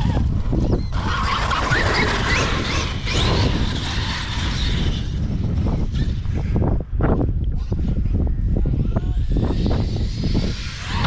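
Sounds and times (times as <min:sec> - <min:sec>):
electric toy truck motor whining: 0:00.0 - 0:06.3.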